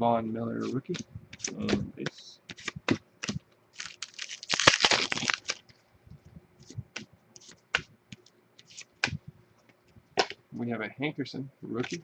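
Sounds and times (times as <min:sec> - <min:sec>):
cards sliding rustle: 0:00.6 - 0:01.8, 0:02.5 - 0:04.4, 0:06.6 - 0:09.2
cards clicking and tapping: 0:00.7 - 0:04.0.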